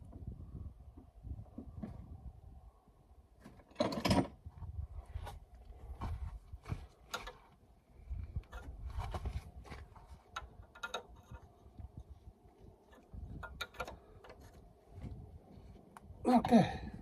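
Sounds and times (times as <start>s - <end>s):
tools clicking and clattering: 10.3s - 11.5s, 12.9s - 14.4s.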